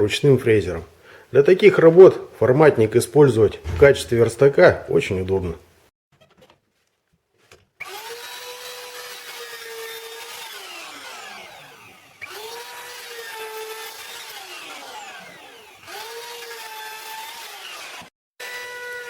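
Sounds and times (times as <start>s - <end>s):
wood router motor whine: 7.8s - 19.0s.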